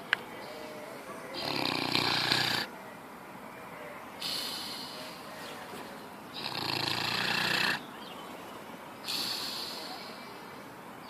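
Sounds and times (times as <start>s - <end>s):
dog snoring: 1.4s - 2.7s, 6.4s - 7.8s.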